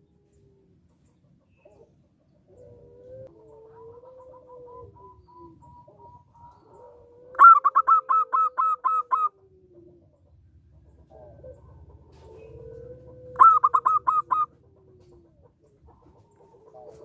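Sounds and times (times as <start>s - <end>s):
dove cooing notes: 1.6s - 17.0s
long gliding bird calls: 4.1s - 9.4s, 12.4s - 14.8s.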